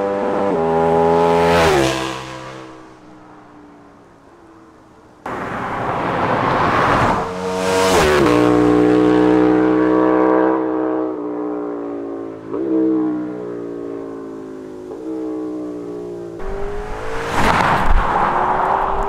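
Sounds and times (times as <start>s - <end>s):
motorcycle engine revving: 7.1s - 12.9s, 16.4s - 18.4s.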